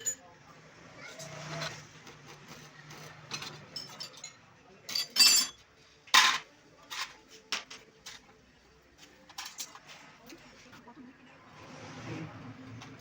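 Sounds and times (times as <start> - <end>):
metal tools clinking: 0.0 - 0.2, 3.3 - 5.6.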